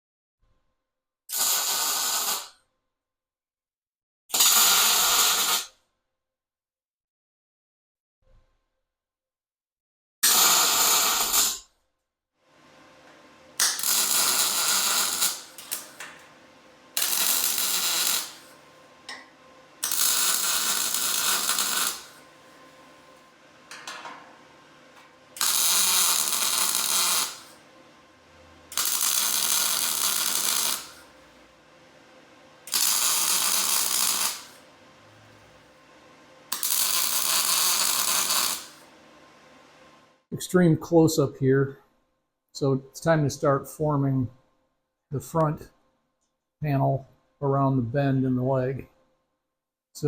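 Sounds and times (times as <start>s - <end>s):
welding arc crackling: 4.4s - 5.6s, 10.3s - 11.6s, 13.6s - 28.0s, 28.6s - 31.7s, 32.6s - 35.8s, 36.5s - 38.9s.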